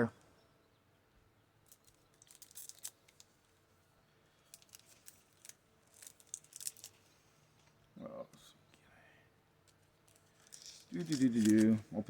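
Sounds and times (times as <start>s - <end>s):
card packs crinkling: 1.8s - 3.3s, 4.5s - 7.0s, 10.1s - 11.8s.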